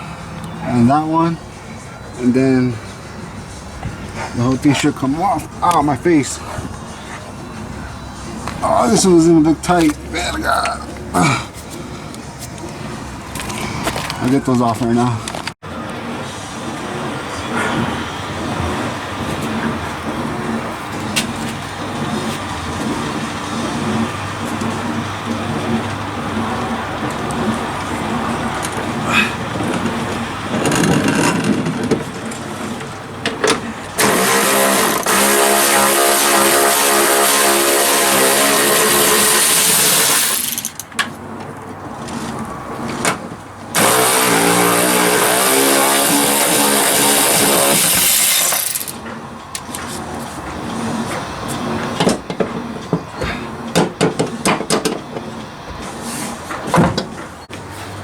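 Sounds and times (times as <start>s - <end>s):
powered wrench whining: 16.2s - 41.1s, 43.8s - 49.8s.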